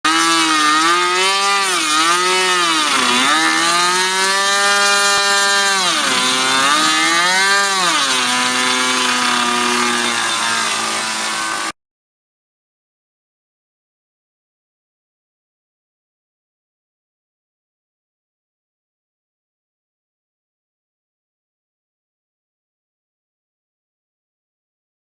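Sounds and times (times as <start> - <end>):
model plane engine revving: 1.6 - 11.8.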